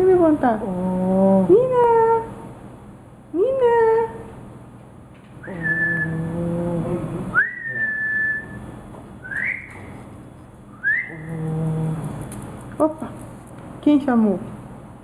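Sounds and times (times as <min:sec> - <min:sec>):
high nasal whistle: 0:07.4 - 0:09.9, 0:10.8 - 0:11.2.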